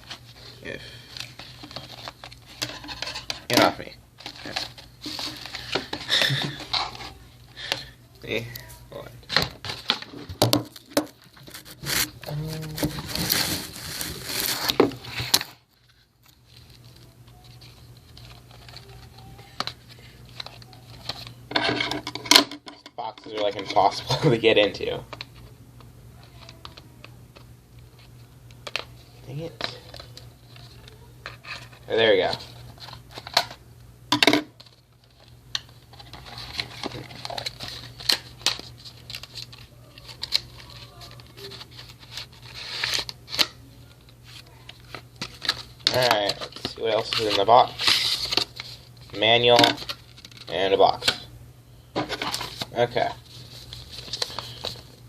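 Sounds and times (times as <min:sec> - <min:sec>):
cardboard and plastic rustling: 0:00.0 - 0:07.3, 0:08.6 - 0:22.2, 0:34.6 - 0:51.2, 0:52.0 - 0:55.0
packaging crinkling: 0:10.7 - 0:21.4, 0:34.6 - 0:50.6, 0:52.1 - 0:55.0.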